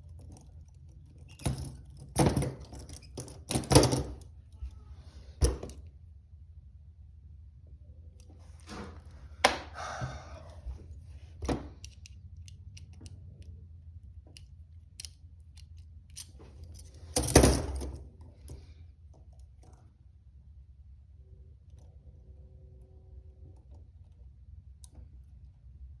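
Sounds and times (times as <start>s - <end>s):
metal handcuffs clicking and rattling: 0.2s - 4.3s, 11.7s - 13.5s, 14.3s - 18.6s.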